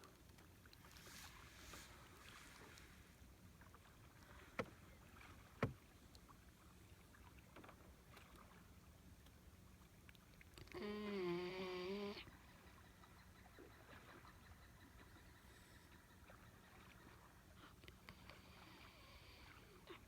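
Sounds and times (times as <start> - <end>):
puppy snoring: 10.8 - 12.2.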